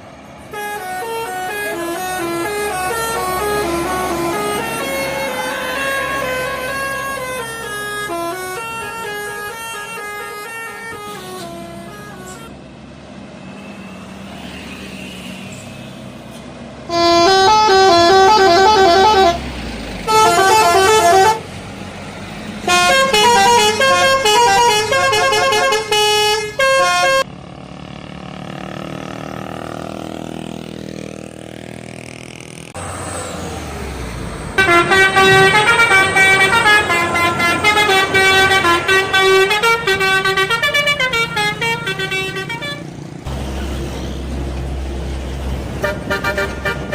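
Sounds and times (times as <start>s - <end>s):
bus engine and road noise: 0.0s - 46.9s
bus horns playing tunes: 0.4s - 12.6s, 16.8s - 21.7s, 22.6s - 27.3s, 34.5s - 44.5s, 45.2s - 46.9s.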